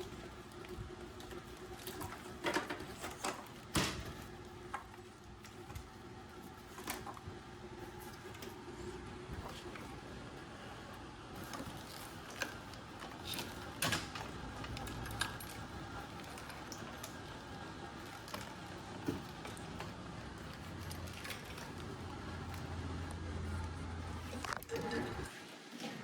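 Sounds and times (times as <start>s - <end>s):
low steady hum: 0.0s - 25.3s
wiring harness clicking and rattling: 11.4s - 17.3s.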